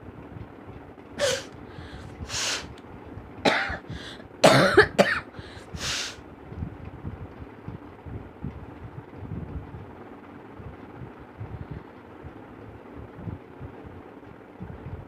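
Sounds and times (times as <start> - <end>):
person coughing and sneezing: 1.2 - 1.5, 3.5 - 5.9.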